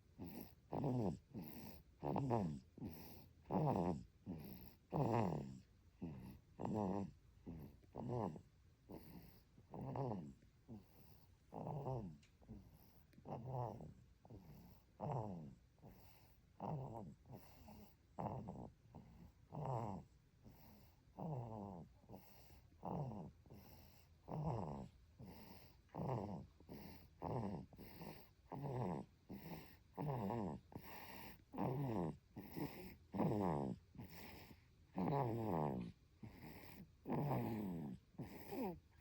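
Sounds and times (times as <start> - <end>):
baby snoring: 0.1 - 39.0.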